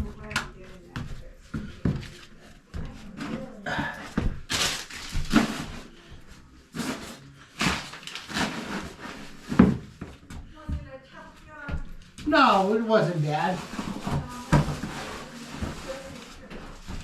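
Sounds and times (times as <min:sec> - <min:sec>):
rustling: 0:12.6 - 0:17.0.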